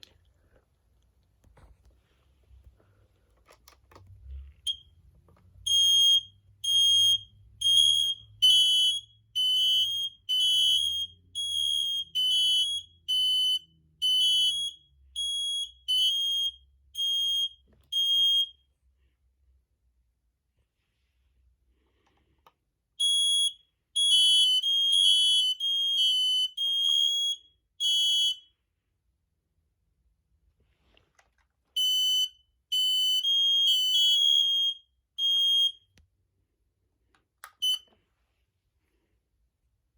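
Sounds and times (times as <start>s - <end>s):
smoke alarm beeping: 4.7s - 5.0s, 5.6s - 18.6s, 23.0s - 28.5s, 31.8s - 36.0s, 37.5s - 37.9s.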